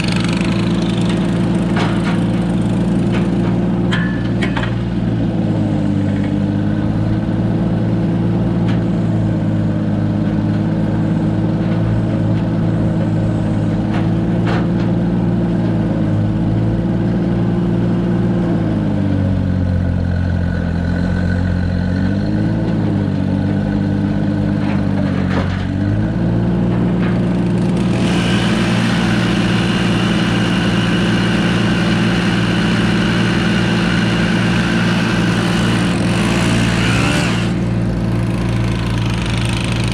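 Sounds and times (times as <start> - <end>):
smaller higher-pitched engine: 0.0 - 9.5, 23.8 - 39.9
loader engine running: 0.0 - 39.9.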